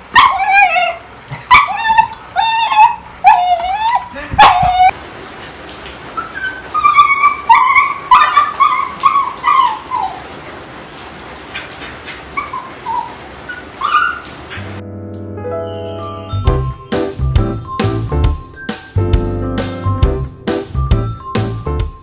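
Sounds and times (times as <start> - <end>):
dog whining and yipping: 0.1 - 5.0, 6.2 - 10.2.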